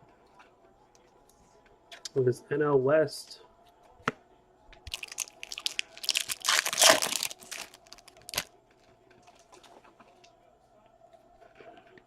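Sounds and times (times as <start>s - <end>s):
foil wrapper tearing and crinkling: 4.9s - 8.5s.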